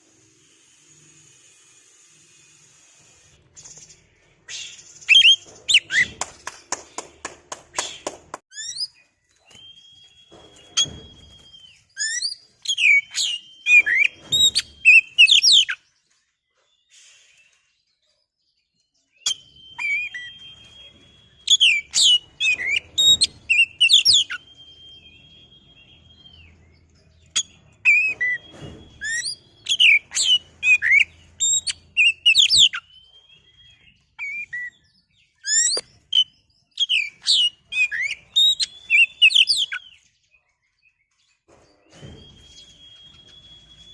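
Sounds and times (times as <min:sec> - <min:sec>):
bird singing whistled notes: 0:07.9 - 0:16.0, 0:16.8 - 0:43.9.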